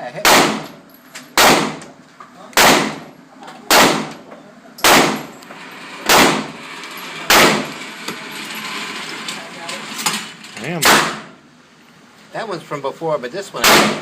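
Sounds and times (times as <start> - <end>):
pistol shots: 0.2 - 0.8, 1.4 - 1.9, 2.6 - 3.1, 3.7 - 4.2, 4.8 - 5.3, 6.1 - 6.5, 7.3 - 7.7, 10.8 - 11.3, 13.6 - 14.0.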